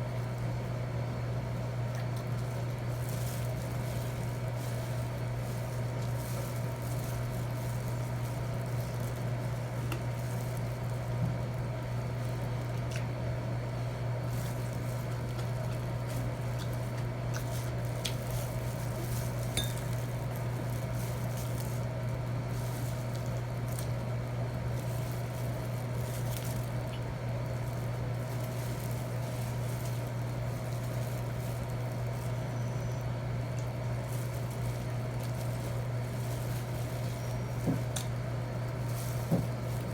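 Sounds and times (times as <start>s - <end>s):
steady low hum: 0.0s - 39.9s
cutlery clinking on plate: 19.6s - 19.9s.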